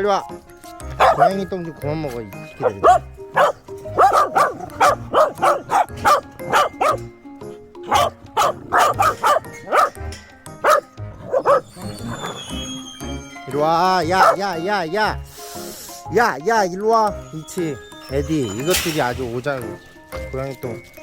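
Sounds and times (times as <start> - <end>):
background music: 0.0 - 21.0
dogs barking: 0.8 - 1.6, 2.4 - 12.9, 13.5 - 14.7.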